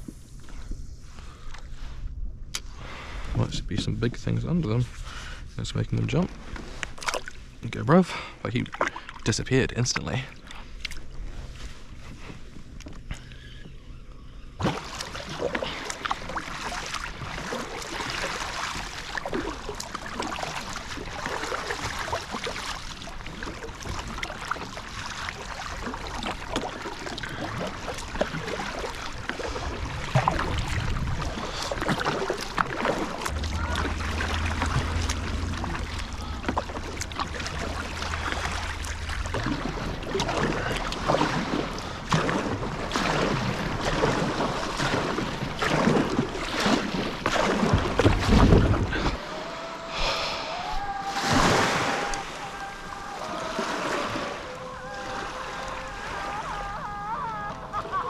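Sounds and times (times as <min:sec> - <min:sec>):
water splashing around a kayak: 0:00.0 - 0:58.0
low rumble: 0:16.3 - 0:46.4.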